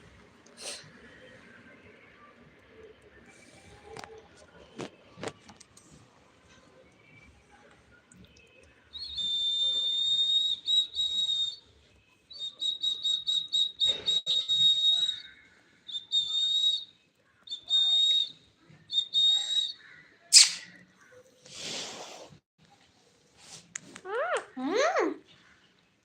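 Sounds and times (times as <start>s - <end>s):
parrot harsh squawk: 20.3s - 20.8s.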